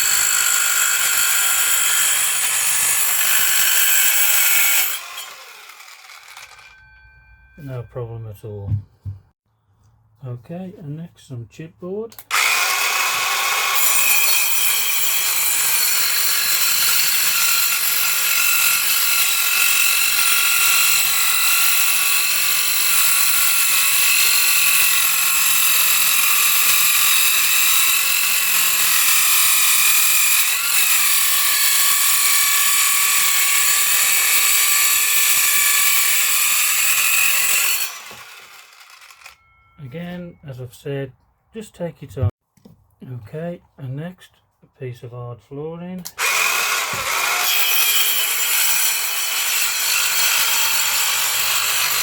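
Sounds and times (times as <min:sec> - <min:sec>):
circular saw cutting chipboard: 0:00.0 - 0:07.0, 0:12.3 - 0:39.6, 0:46.1 - 0:52.0.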